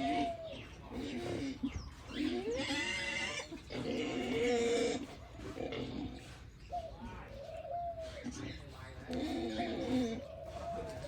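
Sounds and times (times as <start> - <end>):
pigs squealing: 0.0 - 6.9, 9.1 - 11.0.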